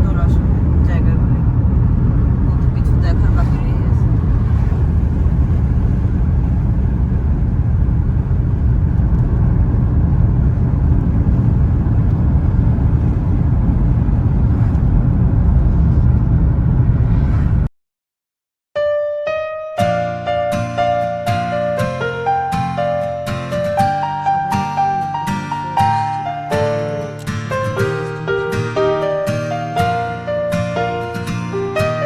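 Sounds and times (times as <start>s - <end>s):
car cabin road rumble: 0.0s - 17.7s
piano music: 18.8s - 32.0s.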